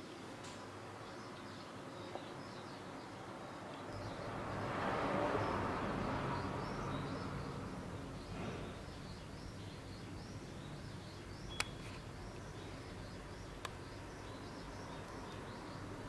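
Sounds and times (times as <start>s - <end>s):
small birds chirping: 0.0s - 16.0s
broad rushing noise: 4.0s - 8.9s.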